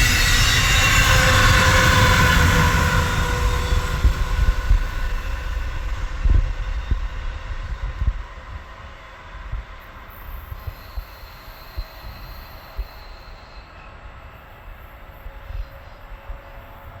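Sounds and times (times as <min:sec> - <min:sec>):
high wheel squeal: 0:00.0 - 0:06.0, 0:10.3 - 0:16.9
train rail and wheel noise: 0:00.0 - 0:17.0.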